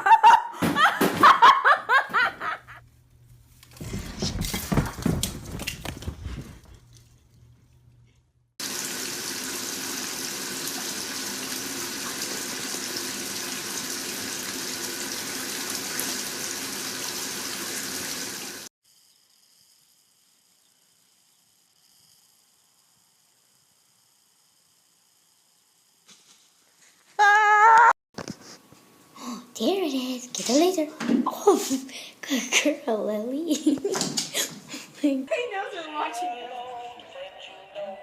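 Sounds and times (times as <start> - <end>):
water running from tap: 8.6 - 18.7.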